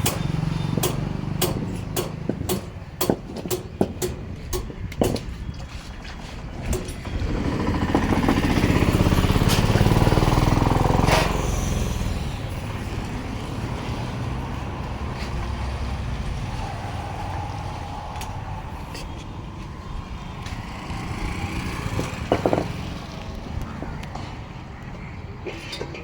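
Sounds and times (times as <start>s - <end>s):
road traffic noise: 0.0s - 26.0s
vehicle engine passing: 6.5s - 24.3s.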